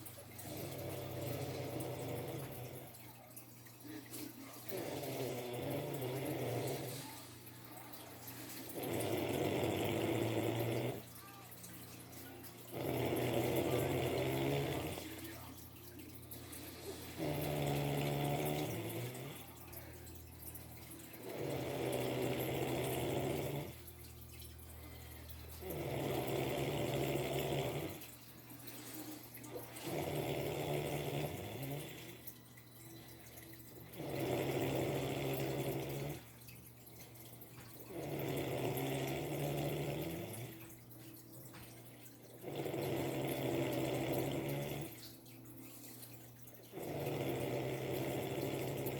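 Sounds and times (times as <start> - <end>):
quiet breathing: 0.0 - 48.9
person snoring: 4.6 - 7.2, 8.6 - 11.1, 12.7 - 15.3, 16.8 - 19.6, 21.2 - 23.8, 25.6 - 28.1, 29.5 - 32.3, 33.8 - 36.2, 37.9 - 40.6, 42.4 - 45.0, 46.7 - 48.9.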